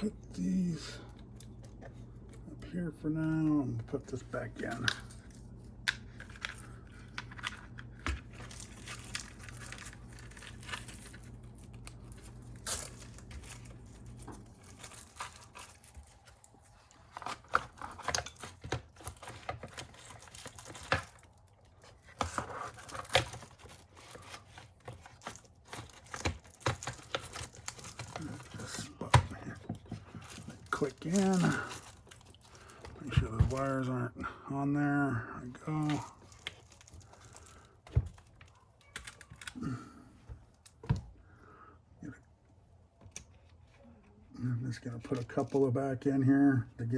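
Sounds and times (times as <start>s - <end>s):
low steady hum: 0.0s - 46.9s
plastic parts clicking and scraping: 3.8s - 33.9s.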